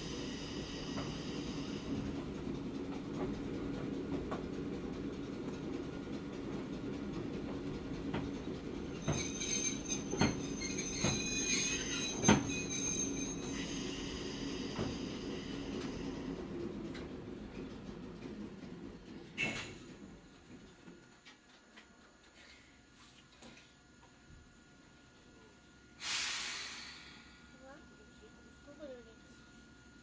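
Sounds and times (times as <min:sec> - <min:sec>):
train motors humming: 0:00.0 - 0:21.2
high wheel squeal: 0:08.9 - 0:14.7.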